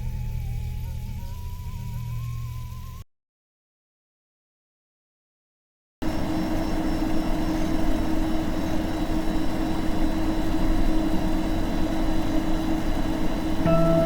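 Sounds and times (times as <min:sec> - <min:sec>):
constant hum tone: 0:00.0 - 0:03.0, 0:06.0 - 0:14.0
low rumbling drone: 0:13.6 - 0:14.0.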